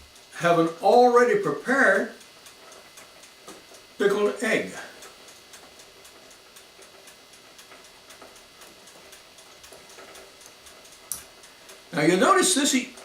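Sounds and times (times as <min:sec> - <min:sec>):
faint rapid ticking: 0:00.0 - 0:13.0.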